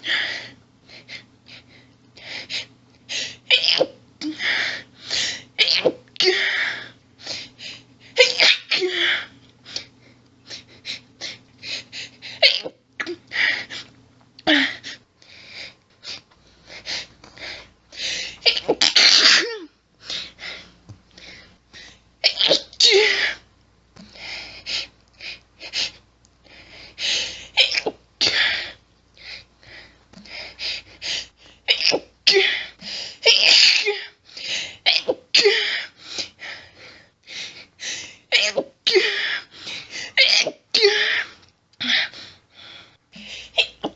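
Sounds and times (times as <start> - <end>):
woman sneezing rapidly: 8.2 - 9.2, 18.4 - 19.7, 31.7 - 32.7, 33.3 - 34.1, 38.3 - 39.4, 40.2 - 41.3.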